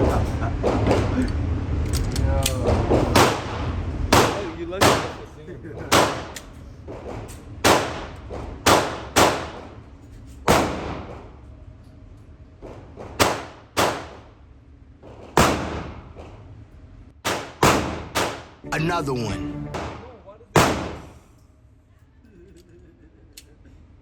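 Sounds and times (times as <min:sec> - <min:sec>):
gunshots with echo: 0:03.1 - 0:05.2, 0:05.9 - 0:06.4, 0:07.6 - 0:09.6, 0:17.2 - 0:18.6, 0:19.7 - 0:20.0, 0:20.6 - 0:21.2.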